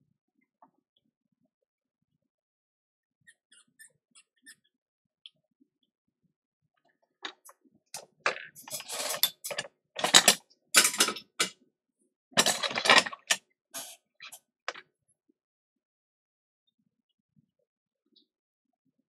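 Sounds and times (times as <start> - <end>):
small metal tools clattering: 8.3 - 11.5, 12.4 - 13.9.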